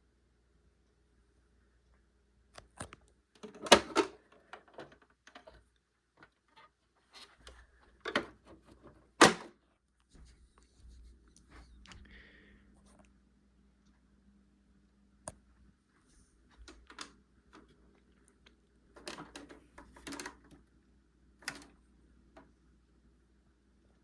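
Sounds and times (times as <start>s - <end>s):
handling clicks and knocks: 7.4s - 9.5s.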